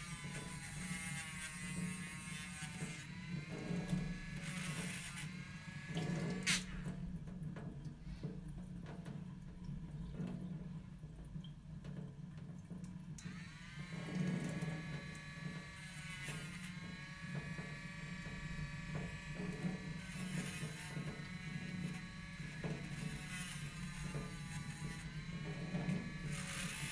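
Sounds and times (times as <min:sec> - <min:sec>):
electric motor tool whine: 0:00.0 - 0:07.0, 0:13.2 - 0:26.9.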